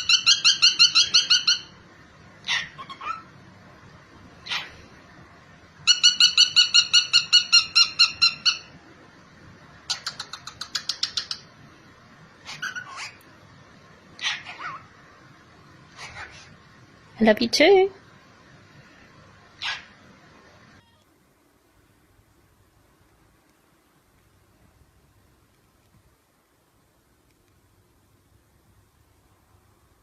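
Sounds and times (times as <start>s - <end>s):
parrot calling repeated notes: 0.0s - 1.8s, 2.4s - 3.3s, 5.8s - 8.8s, 12.4s - 13.2s, 14.2s - 14.9s
parrot squawks: 0.0s - 1.8s, 2.4s - 3.3s, 4.4s - 4.8s, 5.8s - 8.8s, 12.4s - 13.3s, 14.2s - 14.9s, 15.9s - 16.6s, 19.6s - 20.0s.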